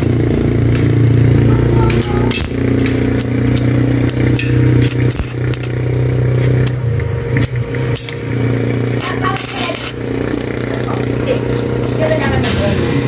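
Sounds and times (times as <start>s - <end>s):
sharp clicks and knocks: 0.0s - 1.1s, 1.8s - 5.8s, 6.4s - 8.2s
low mechanical hum: 0.0s - 13.0s.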